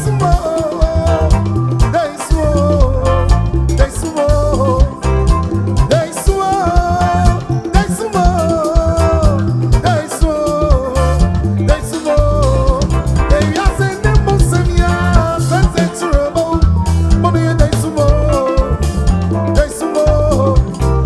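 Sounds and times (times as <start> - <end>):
highlife band playing: 0.0 - 21.0.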